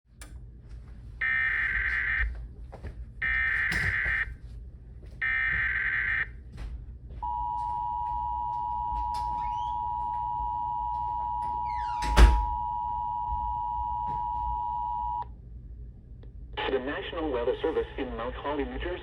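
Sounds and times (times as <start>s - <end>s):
steady attention tone: 7.2s - 15.2s.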